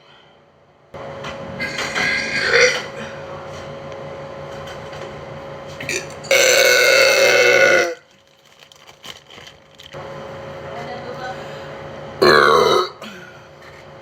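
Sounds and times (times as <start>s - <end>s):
woman burping: 1.6s - 3.0s, 5.9s - 8.0s, 12.2s - 13.4s.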